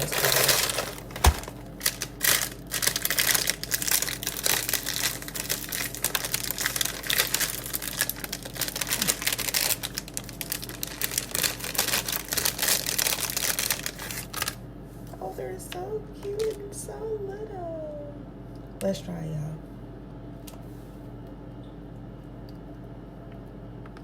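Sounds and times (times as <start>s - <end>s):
packaging crinkling: 0.0s - 14.6s.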